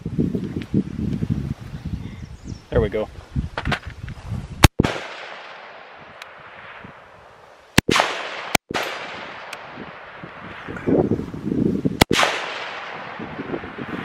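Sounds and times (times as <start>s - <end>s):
rifle shots with rolling echo: 4.6s - 10.8s, 12.0s - 14.0s
distant single rifle shots: 4.7s - 6.9s, 7.8s - 10.4s, 12.0s - 13.3s.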